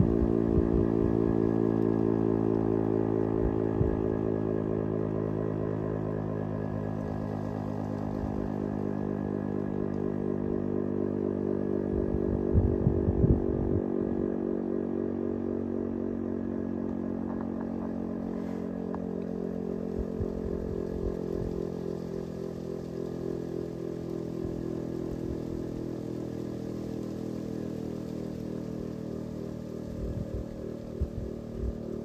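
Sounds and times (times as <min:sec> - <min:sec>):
wind gusts on microphone: 0:00.0 - 0:01.7, 0:12.0 - 0:13.9, 0:19.8 - 0:23.5, 0:27.8 - 0:32.0.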